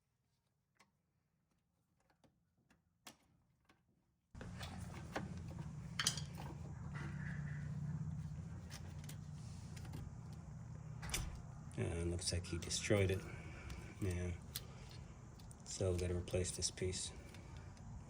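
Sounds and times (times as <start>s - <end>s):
clicks and knocks of parts handled: 4.4s - 6.8s, 8.6s - 11.6s, 12.6s - 18.0s
steady low hum: 4.4s - 18.0s.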